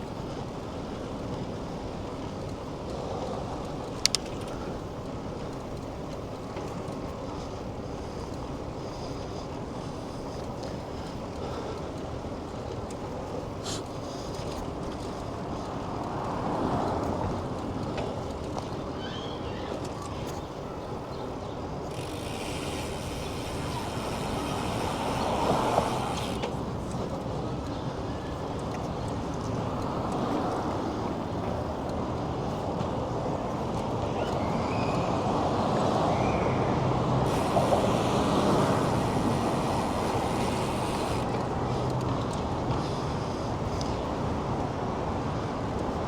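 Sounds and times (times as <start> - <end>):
bicycle rolling: 0.0 - 46.0
city traffic noise: 0.0 - 46.0
wind hiss: 21.1 - 28.0, 28.9 - 46.0
high hiss: 21.9 - 26.7, 37.2 - 41.4
vehicle passing close: 21.9 - 26.7, 35.9 - 41.9.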